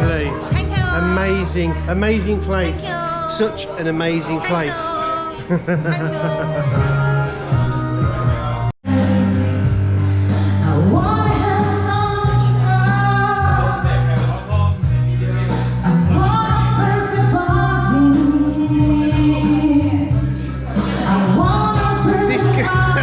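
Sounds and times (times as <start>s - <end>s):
woman singing karaoke: 0.5s - 1.2s, 2.7s - 3.3s, 4.4s - 7.5s, 8.9s - 13.9s, 15.9s - 23.0s
backing track with bass line: 5.5s - 23.0s.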